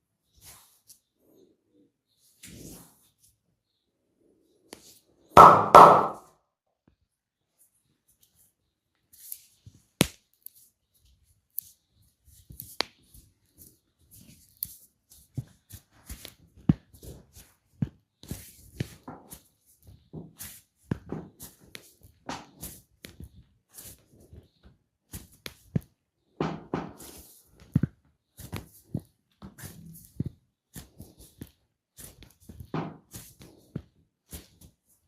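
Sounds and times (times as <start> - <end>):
hands rubbing skin: 18.2 - 25.9, 28.4 - 34.9.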